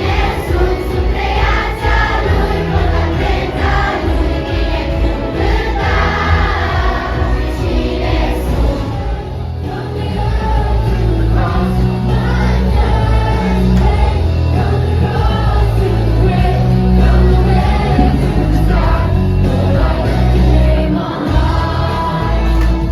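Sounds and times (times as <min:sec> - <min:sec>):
children singing together: 0:00.0 - 0:22.9
music with heavy bass: 0:12.8 - 0:22.9.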